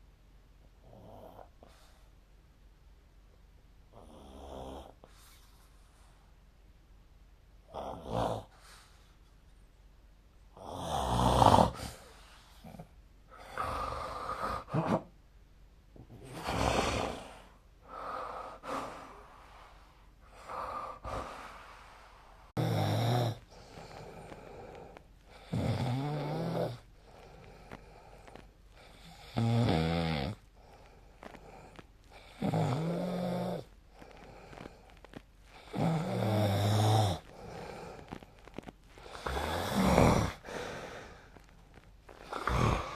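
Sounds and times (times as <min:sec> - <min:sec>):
person snoring: 0:10.6 - 0:15.0, 0:16.2 - 0:19.5, 0:20.3 - 0:42.9.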